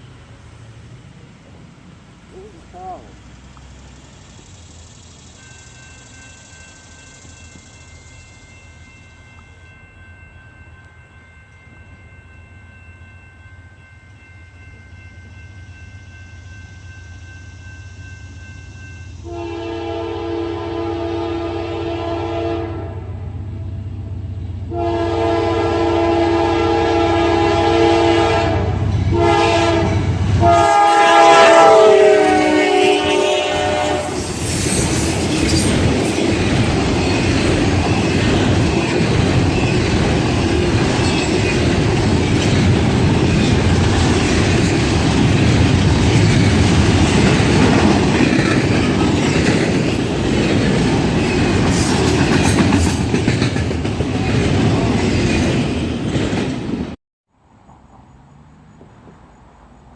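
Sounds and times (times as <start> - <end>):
railcars rumbling and rattling: 0.0 - 59.9
locomotive air horn: 19.2 - 23.2, 24.7 - 34.3.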